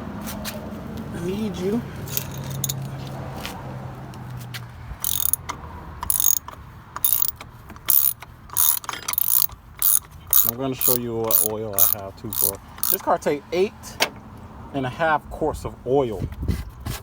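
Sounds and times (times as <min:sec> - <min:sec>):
socket wrench ratchet clicking: 0:02.1 - 0:02.8, 0:05.0 - 0:13.1.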